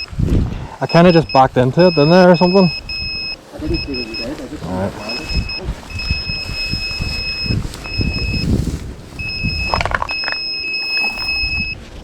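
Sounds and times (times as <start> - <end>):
low wind rumble: 5.7 - 12.0
high-pitched electronic beeping: 9.2 - 11.8
rustling clicks: 9.2 - 11.8.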